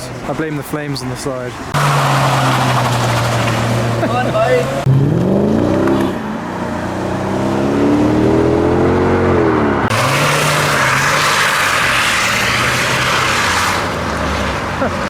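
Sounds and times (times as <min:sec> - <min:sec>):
car engine revving: 0:01.5 - 0:15.0.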